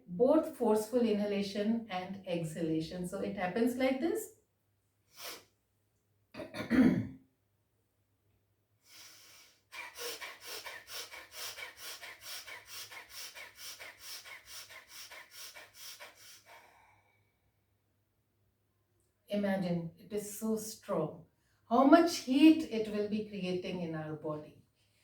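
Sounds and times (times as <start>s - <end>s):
loud burst of breath: 8.8s - 17.2s
long intake of breath: 8.9s - 17.2s
rapid forceful breathing: 8.9s - 17.2s.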